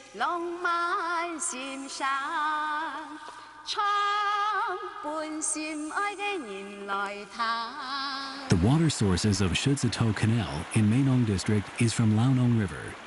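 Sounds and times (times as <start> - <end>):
woman singing slow melody: 0.0 - 8.5.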